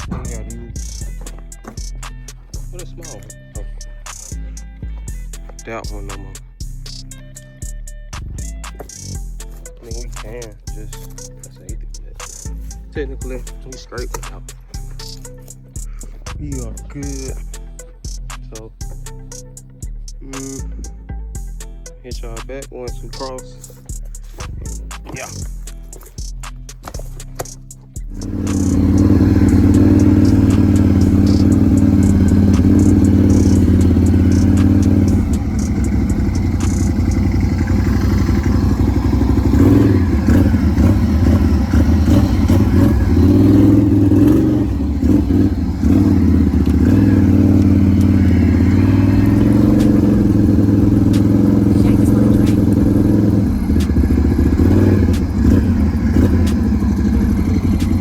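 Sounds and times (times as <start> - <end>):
atv engine revving: 0.0 - 7.4, 24.3 - 58.0.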